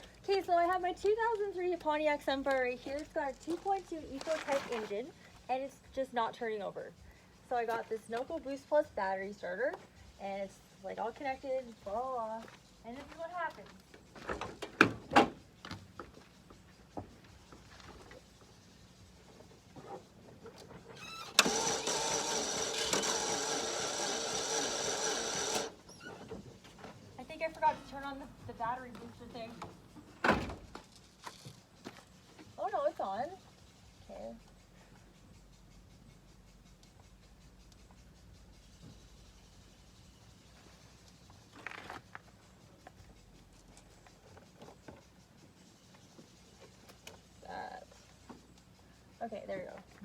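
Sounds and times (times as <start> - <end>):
handling rustle: 0.0 - 5.5
car starter motor whirring: 20.9 - 26.2.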